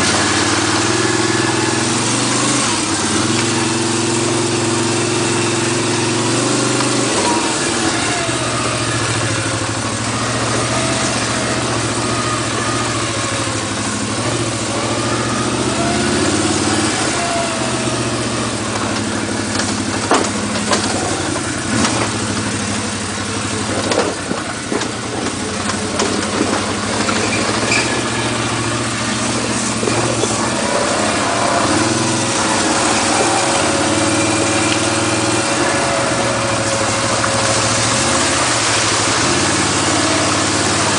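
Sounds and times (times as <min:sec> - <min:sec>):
atv engine revving: 0:00.0 - 0:40.9
sharp knocks: 0:18.8 - 0:22.4.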